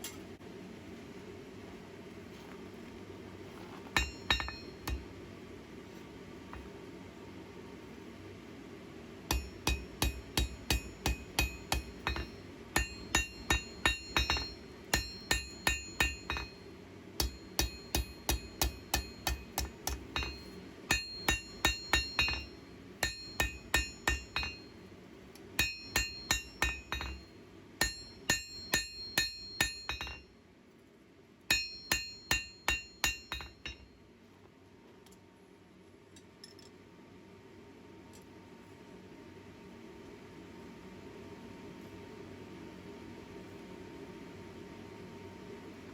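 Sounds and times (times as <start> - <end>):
hammer striking steel on anvil: 4.0 - 5.1, 9.3 - 24.8, 25.6 - 30.3, 31.5 - 33.9.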